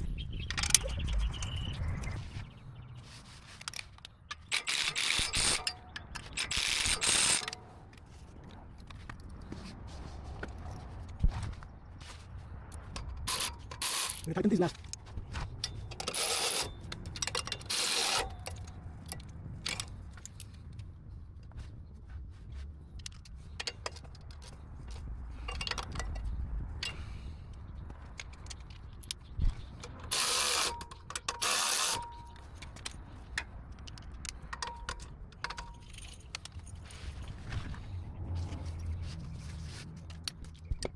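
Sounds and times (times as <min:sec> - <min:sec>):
hand tools ratcheting on metal: 0:03.6 - 0:07.7, 0:13.0 - 0:15.0, 0:15.6 - 0:20.5, 0:28.2 - 0:36.6
power tool whirring: 0:04.4 - 0:07.5, 0:13.3 - 0:14.3, 0:16.0 - 0:16.7, 0:17.6 - 0:18.4, 0:30.1 - 0:32.2.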